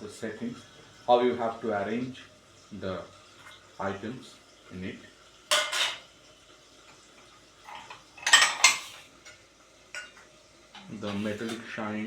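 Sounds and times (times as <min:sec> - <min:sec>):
dishes and utensils clinking: 0:05.5 - 0:06.1, 0:07.6 - 0:11.6.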